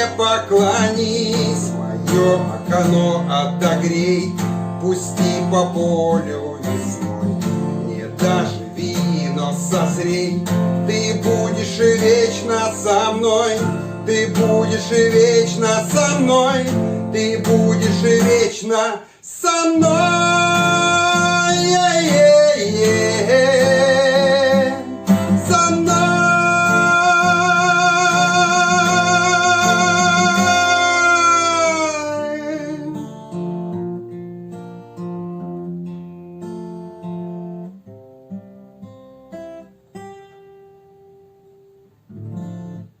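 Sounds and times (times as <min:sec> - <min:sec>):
man singing wordless note: 0:00.0 - 0:33.2
acoustic guitar strumming: 0:00.0 - 0:43.0.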